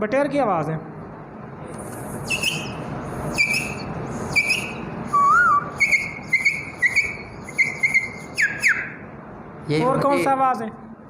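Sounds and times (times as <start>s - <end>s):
boy whistling quail calls: 2.3s - 9.0s.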